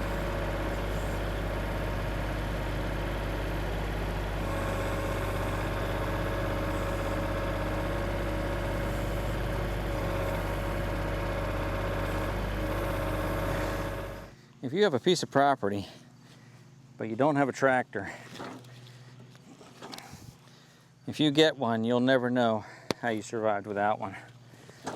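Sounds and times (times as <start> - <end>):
diesel tractor engine running: 0.0 - 14.4.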